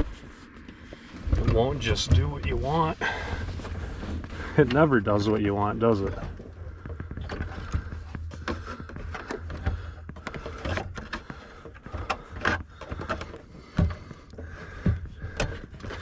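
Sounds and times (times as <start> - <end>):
low steady hum: 0.0 - 16.0
clicks knocks and rattles: 5.3 - 16.0.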